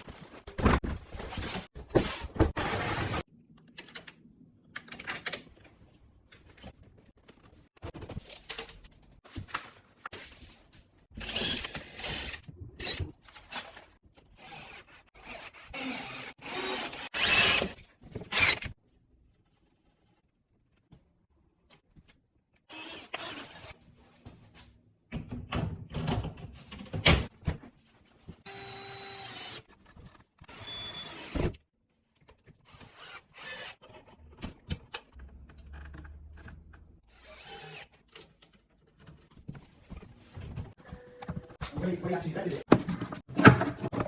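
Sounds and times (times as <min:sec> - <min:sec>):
rubbing and clunks: 0:40.2 - 0:44.0.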